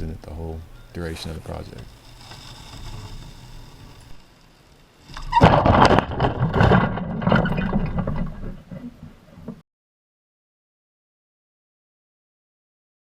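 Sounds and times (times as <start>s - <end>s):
fronds crackling and thudding: 0.0s - 4.4s, 5.0s - 8.8s
palm tree crashing down: 5.1s - 8.6s.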